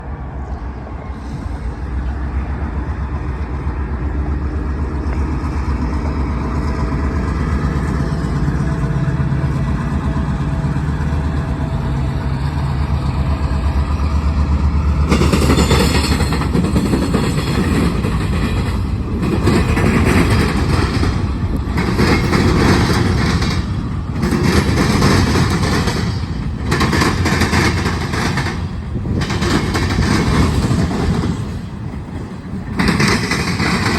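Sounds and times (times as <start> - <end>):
diesel locomotive engine drone: 0.0 - 33.9
freight cars rumbling on rails: 0.0 - 33.9.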